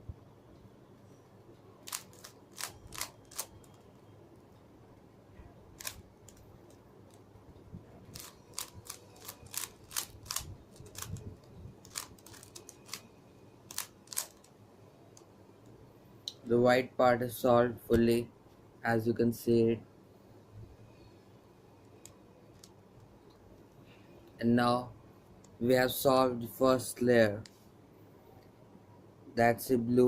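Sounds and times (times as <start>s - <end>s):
puzzle cube clicking as twisted: 1.9s - 3.8s, 5.8s - 7.2s, 8.1s - 13.1s, 13.7s - 14.5s, 22.0s - 23.1s.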